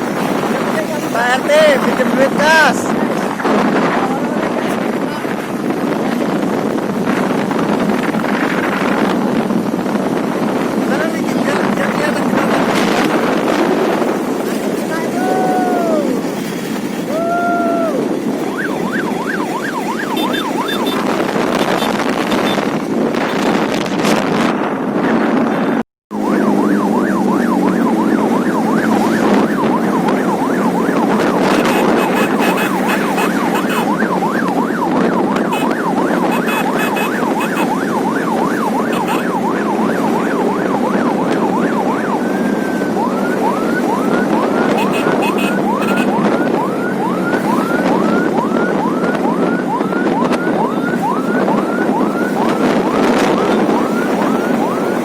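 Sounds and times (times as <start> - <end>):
road and engine noise: 0.0 - 55.0
electronic police siren: 17.9 - 22.7, 26.1 - 55.0.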